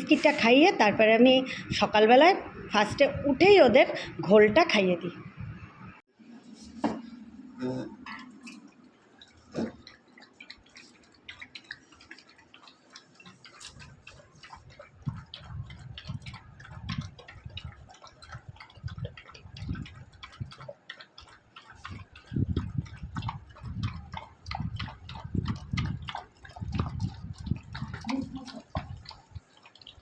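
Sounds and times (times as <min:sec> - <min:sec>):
dogs lapping from a bowl: 0:08.0 - 0:30.0.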